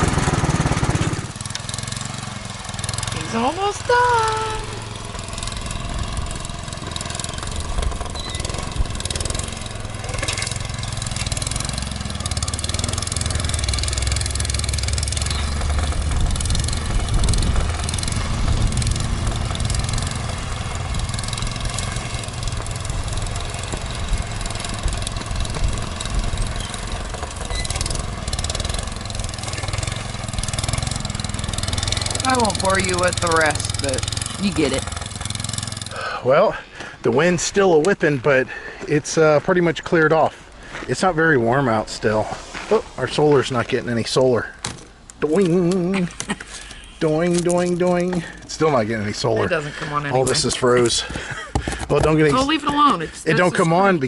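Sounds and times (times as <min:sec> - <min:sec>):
small tractor engine running: 0:00.0 - 0:42.0, 0:43.0 - 0:54.0
wind noise on microphone: 0:16.0 - 0:19.2.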